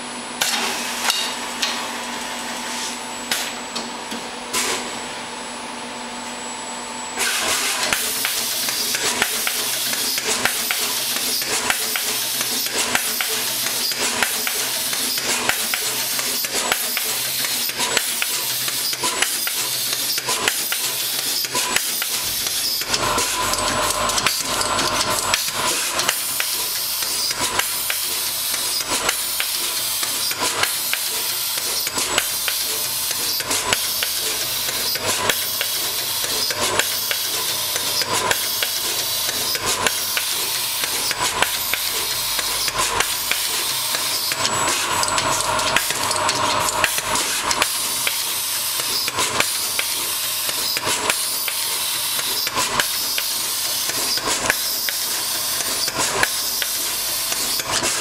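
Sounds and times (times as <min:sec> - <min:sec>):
rapid mechanical clicks: 0:07.8 - 0:58.0.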